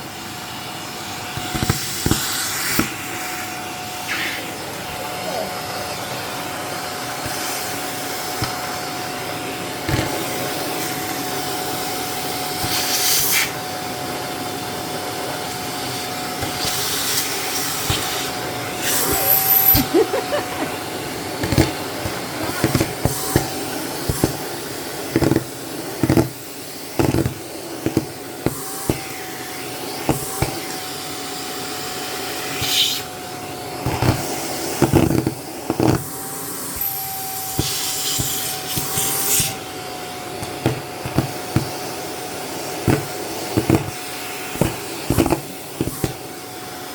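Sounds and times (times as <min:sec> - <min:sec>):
vacuum cleaner running: 0:00.0 - 0:46.9
packing peanuts clattering in nozzle: 0:16.0 - 0:29.4, 0:33.7 - 0:39.7, 0:40.4 - 0:46.4.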